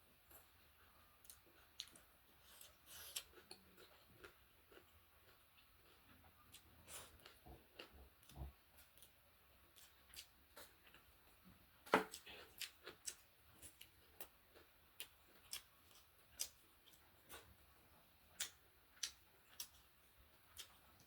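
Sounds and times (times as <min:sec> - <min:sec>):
chewing clicks and smacks: 0:12.1 - 0:17.5, 0:18.4 - 0:19.9.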